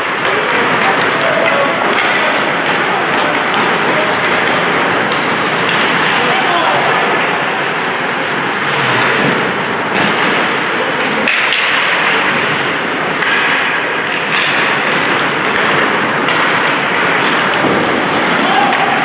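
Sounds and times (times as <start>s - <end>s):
ice rink din: 0.0s - 19.0s
sharp hockey knocks: 11.2s - 19.0s.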